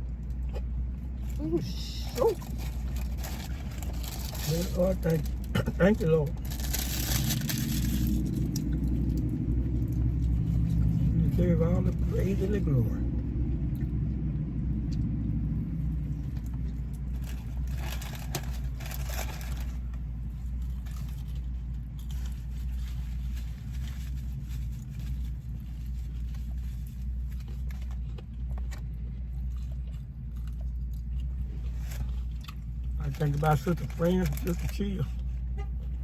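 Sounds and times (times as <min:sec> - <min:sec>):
person crunching food: 0:06.3 - 0:11.2, 0:15.8 - 0:34.7.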